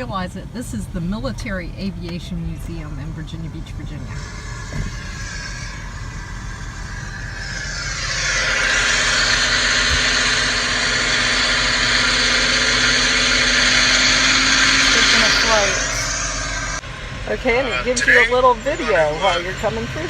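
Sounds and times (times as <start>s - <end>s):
steady hum: 0.0s - 19.8s
car engine and road rumble: 0.0s - 20.0s
loud steady hiss: 4.2s - 16.8s.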